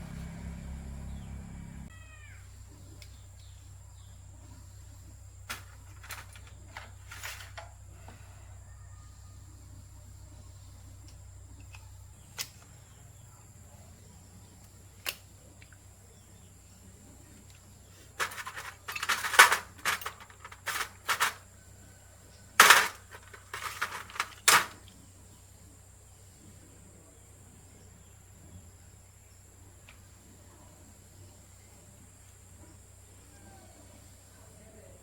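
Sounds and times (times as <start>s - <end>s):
metal parts clattering and scraping: 5.5s - 7.8s, 18.2s - 21.4s, 22.6s - 24.8s.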